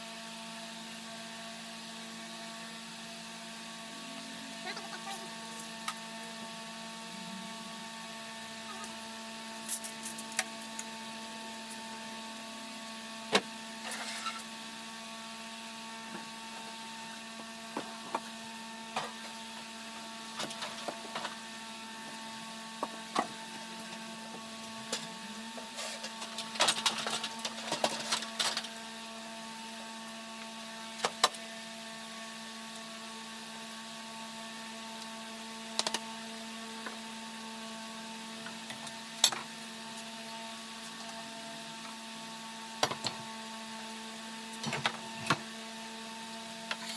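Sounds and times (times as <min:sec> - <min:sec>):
steady electrical hum: 0:00.0 - 0:46.9.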